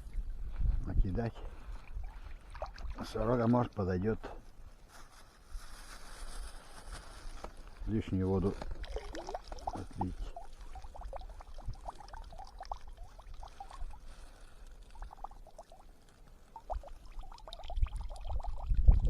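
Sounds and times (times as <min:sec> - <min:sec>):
low wind noise on microphone: 0:00.0 - 0:03.2, 0:05.4 - 0:14.0, 0:16.6 - 0:19.0
water trickling and dripping: 0:01.6 - 0:03.9, 0:07.7 - 0:19.0.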